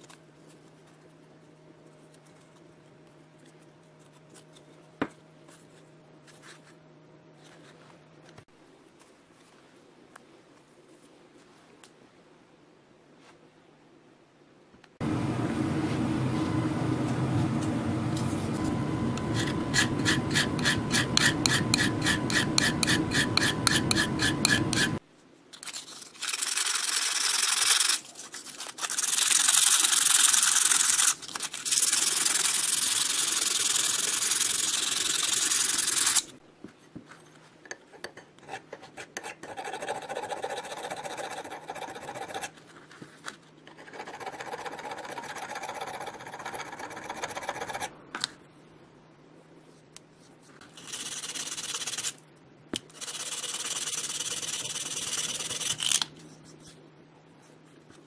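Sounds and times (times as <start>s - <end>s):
metal scraping: 18.2s - 25.0s.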